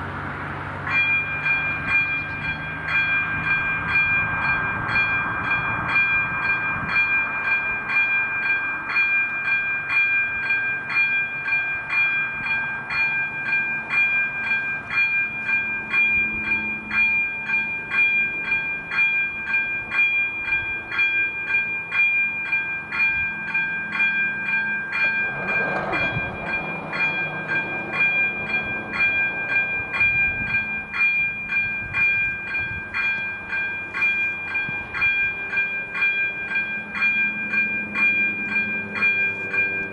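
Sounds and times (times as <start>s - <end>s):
level crossing warning bell: 0.0s - 39.9s
passing noise: 24.9s - 31.0s
low rumble: 25.1s - 33.0s.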